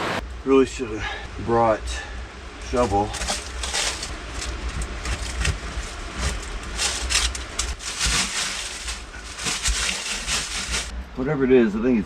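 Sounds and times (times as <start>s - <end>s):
scraping and rustling in dirt: 2.6s - 11.0s.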